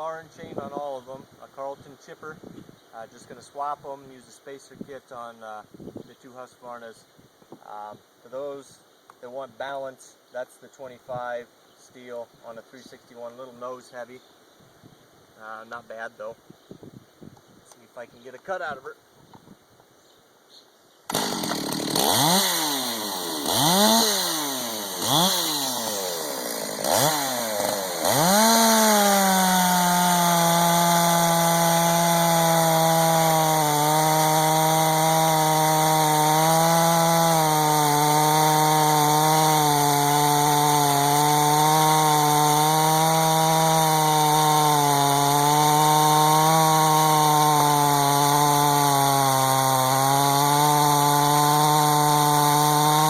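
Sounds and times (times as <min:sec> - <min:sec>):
chainsaw revving and cutting wood: 0:21.1 - 0:53.0.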